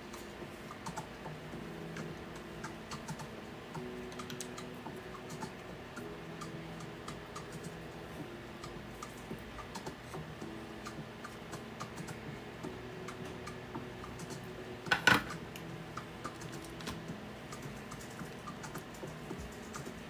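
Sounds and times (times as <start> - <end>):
small tools clicking and tapping: 14.9 - 15.4.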